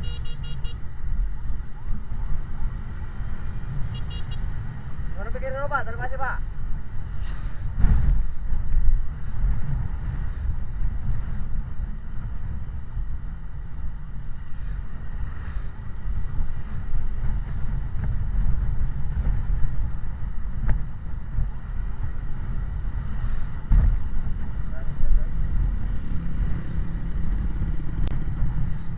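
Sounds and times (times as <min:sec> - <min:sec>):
road noise in traffic: 0:00.0 - 0:28.9
vehicle engine rumble: 0:00.0 - 0:28.9
wind buffeting microphone: 0:06.5 - 0:28.9.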